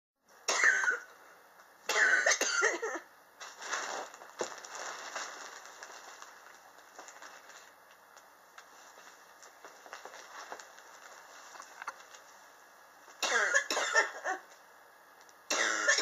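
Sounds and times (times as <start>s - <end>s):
man coughing: 13.2s - 14.4s.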